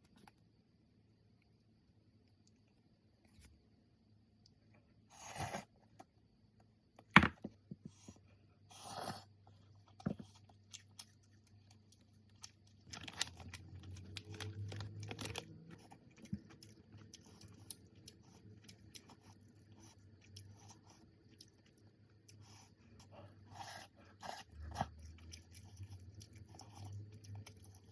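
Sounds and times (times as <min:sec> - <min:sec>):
low steady hum: 0:00.0 - 0:27.9
eating clicks and crunches: 0:09.8 - 0:23.1, 0:24.2 - 0:27.9.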